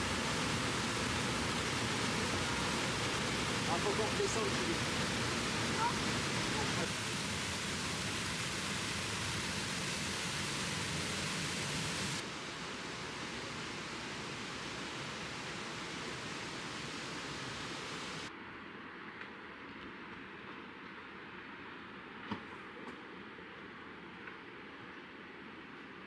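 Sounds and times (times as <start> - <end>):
waterfall rushing: 0.0 - 18.3.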